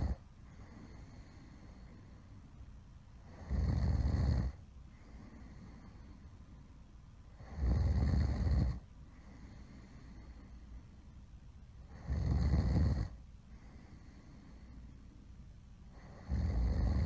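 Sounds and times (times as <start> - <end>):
person snoring loudly: 3.3 - 4.6, 7.4 - 8.8, 11.9 - 13.2, 16.0 - 17.0.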